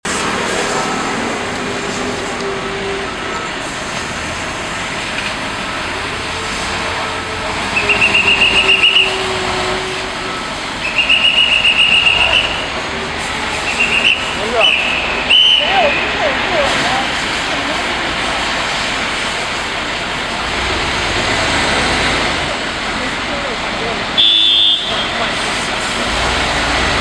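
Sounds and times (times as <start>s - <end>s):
crane diesel engine running: 0.0s - 27.0s
pulsing warning beeper: 0.8s - 17.1s.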